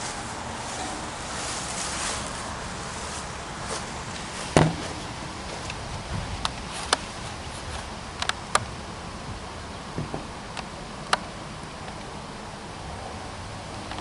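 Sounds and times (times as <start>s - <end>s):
steady background hiss: 0.0s - 14.0s
sharp knock: 4.6s - 5.0s.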